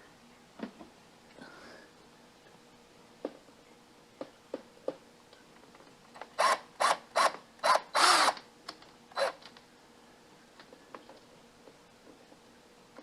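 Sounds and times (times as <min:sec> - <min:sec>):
cordless drill driving screw: 0:06.4 - 0:08.4.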